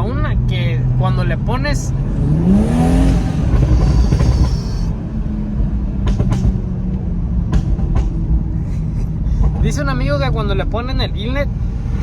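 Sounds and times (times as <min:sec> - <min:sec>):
turbocharged car engine: 0:00.6 - 0:06.3.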